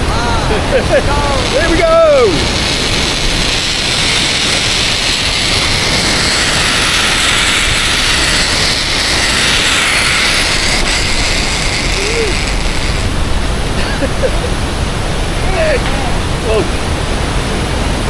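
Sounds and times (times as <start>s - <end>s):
wind: 0.0s - 18.0s
zip-line trolley whirring on cable: 0.4s - 14.8s.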